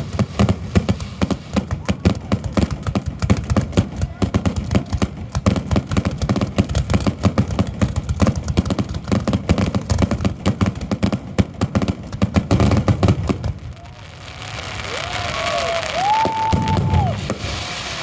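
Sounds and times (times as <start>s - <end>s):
fireworks shells bursting: 0.0s - 10.0s, 15.1s - 18.0s
crowd cheering: 13.7s - 18.0s.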